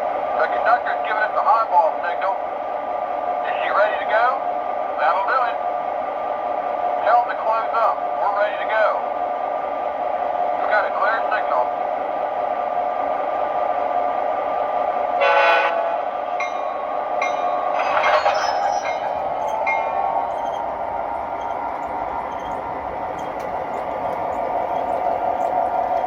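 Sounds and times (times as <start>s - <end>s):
model train horn blast: 15.2s - 16.0s
bell ringing: 16.4s - 20.6s
diesel engine hum: 18.2s - 26.0s
faint clicks: 21.4s - 26.0s.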